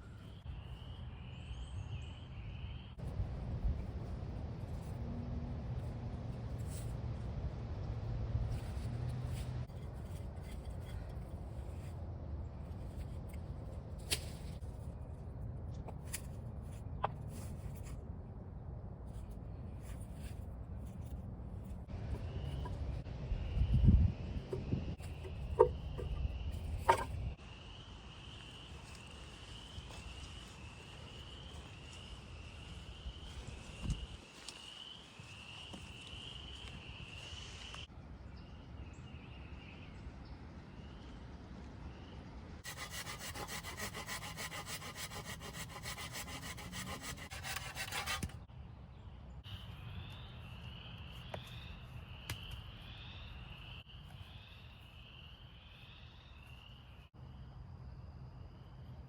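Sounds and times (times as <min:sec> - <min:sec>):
hand saw cutting wood: 0:42.6 - 0:48.4.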